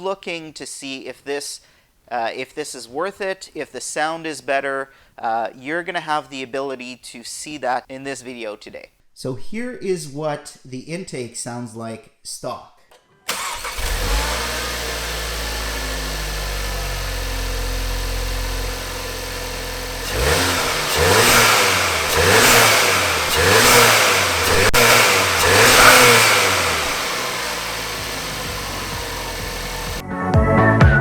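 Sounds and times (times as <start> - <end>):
car engine idling and revving: 13.3 - 30.0.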